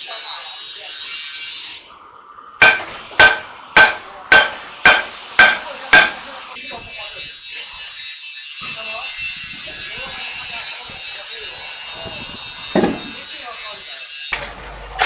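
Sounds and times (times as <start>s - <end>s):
hammer striking metal: 2.6s - 6.3s, 12.7s - 13.2s.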